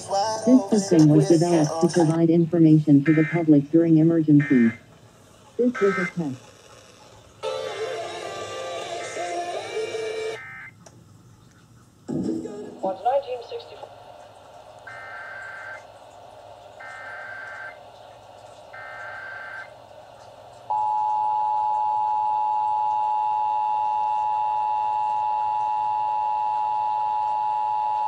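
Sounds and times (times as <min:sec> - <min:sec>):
digital data bursts: 0:14.8 - 0:19.8.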